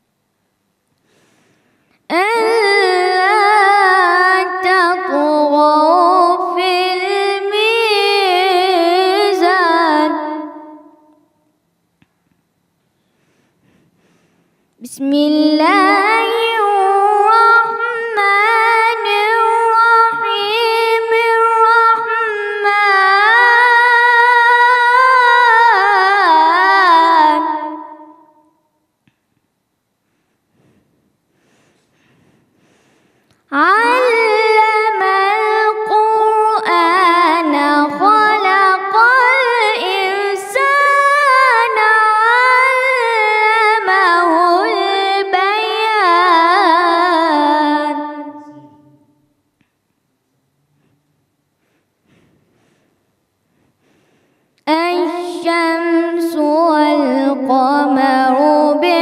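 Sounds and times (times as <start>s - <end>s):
person chanting recitation: 14.8s - 28.2s, 33.5s - 49.1s, 54.7s - 59.0s.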